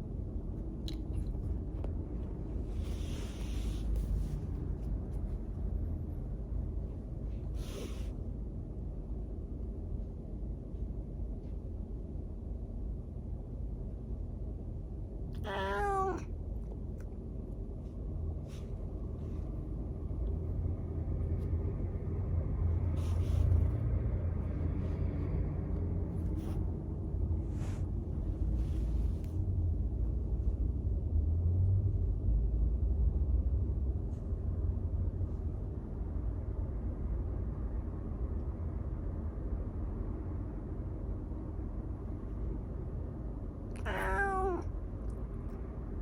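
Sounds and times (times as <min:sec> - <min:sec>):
steady low rumble: 0:00.0 - 0:46.0
cat meowing: 0:15.4 - 0:16.3, 0:43.8 - 0:44.7.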